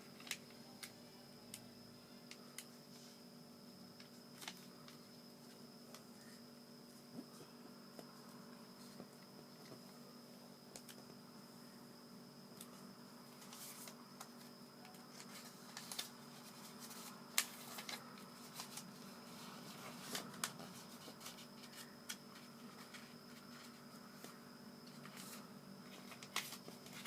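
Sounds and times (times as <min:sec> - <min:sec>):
steady low hum: 0:00.0 - 0:27.0
paper folding and crinkling: 0:04.0 - 0:06.0, 0:13.3 - 0:27.0.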